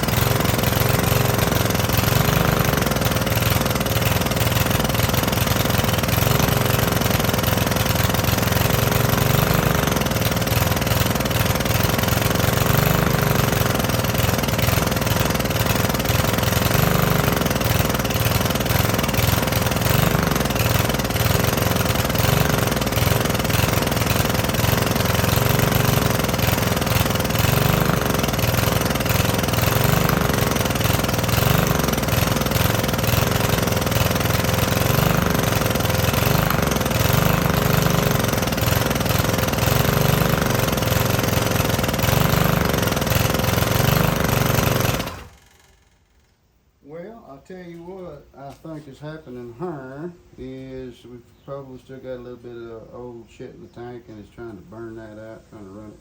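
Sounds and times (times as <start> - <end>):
lawn edger engine running: 0.0 - 46.3.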